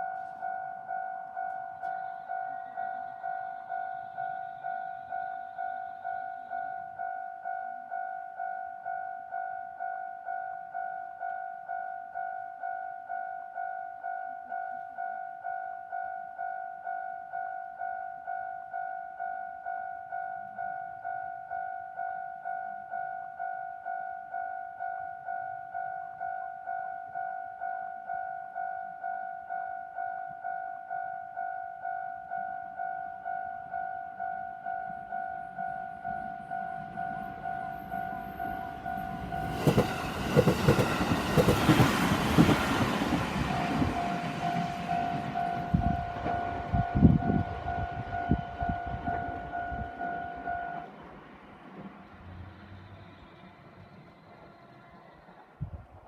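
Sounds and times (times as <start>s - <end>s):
level crossing bell ringing: 0.0s - 39.8s.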